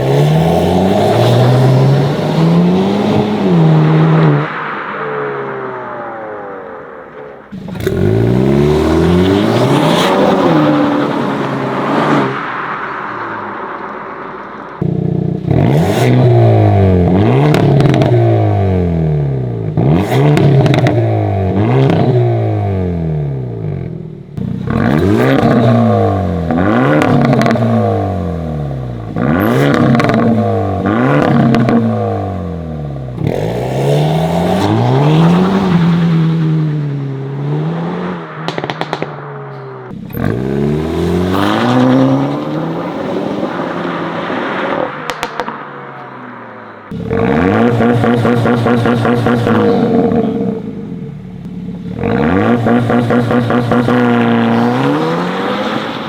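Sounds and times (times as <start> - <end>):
car accelerating away: 0.0 - 56.0
car engine revving: 0.0 - 56.0
exhaust cracks: 4.3 - 10.6, 23.8 - 55.8.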